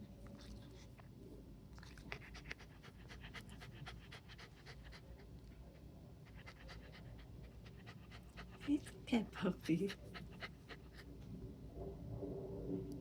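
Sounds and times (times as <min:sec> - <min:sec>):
dog panting: 0:01.8 - 0:11.2.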